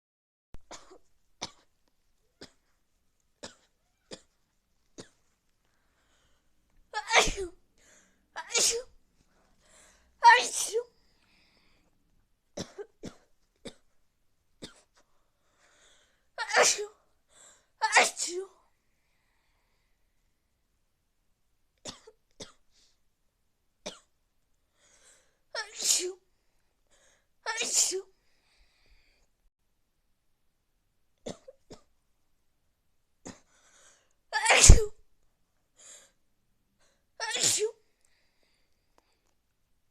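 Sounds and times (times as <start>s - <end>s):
person sneezing: 7.0s - 7.6s, 8.4s - 8.9s, 10.2s - 10.9s, 16.4s - 17.0s, 17.8s - 18.5s, 25.6s - 26.2s, 27.5s - 28.1s, 34.4s - 35.0s, 37.2s - 37.8s
breathy inhale: 7.8s - 8.2s, 9.6s - 10.2s, 11.0s - 12.0s, 15.4s - 16.3s, 33.5s - 34.1s.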